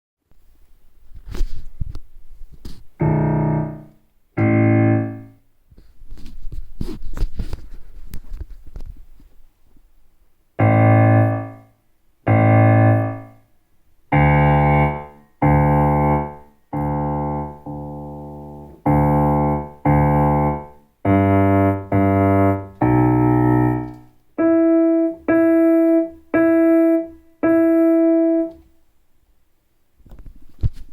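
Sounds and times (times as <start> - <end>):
digital piano chords: 2.9 - 5.4, 10.6 - 13.4, 14.1 - 28.7
unpitched noise: 3.0 - 5.4.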